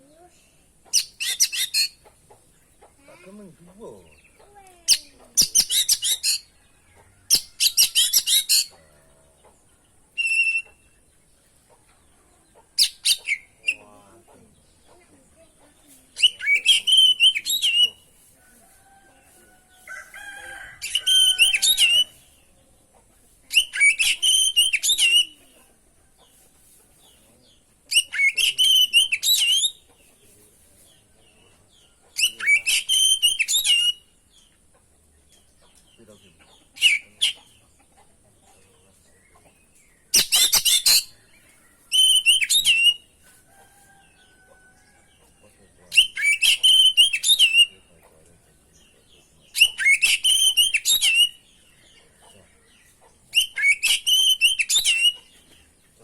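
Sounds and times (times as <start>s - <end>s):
magpie-robin singing: 0.8s - 2.2s, 3.0s - 6.5s, 7.3s - 8.8s, 10.1s - 10.9s, 12.8s - 14.0s, 15.7s - 18.1s, 23.5s - 25.6s, 27.0s - 30.0s, 31.8s - 34.5s, 35.7s - 37.6s, 39.2s - 43.1s, 45.9s - 47.9s, 48.7s - 55.6s.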